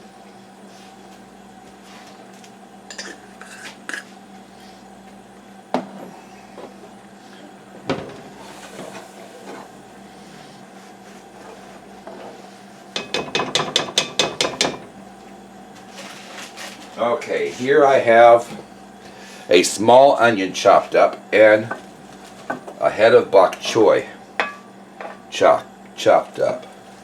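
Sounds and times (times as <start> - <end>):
steady hum: 0.0 - 27.0
utensils knocking and clicking: 13.0 - 14.8.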